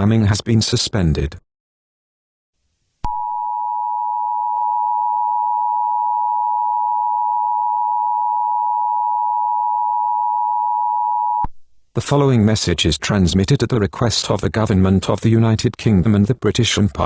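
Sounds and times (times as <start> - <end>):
harsh two-tone alarm: 3.2 - 11.5.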